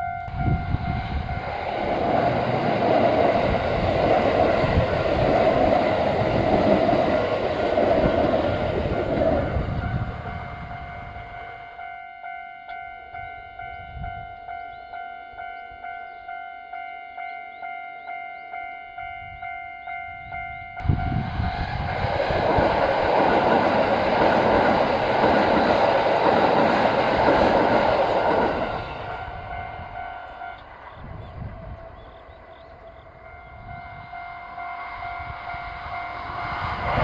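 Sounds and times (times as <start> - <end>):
train rushing past: 0.0 - 11.6, 20.8 - 37.0.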